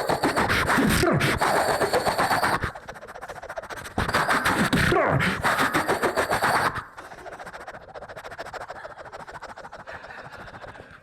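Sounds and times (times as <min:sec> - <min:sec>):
vocal machine-gun imitation: 0:00.0 - 0:02.9, 0:04.0 - 0:07.2.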